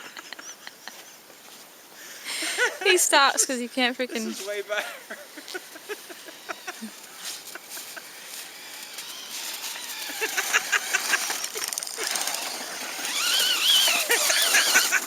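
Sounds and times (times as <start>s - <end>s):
tyres clicking on snow: 4.1s - 15.0s
electric motor whining: 5.4s - 15.0s.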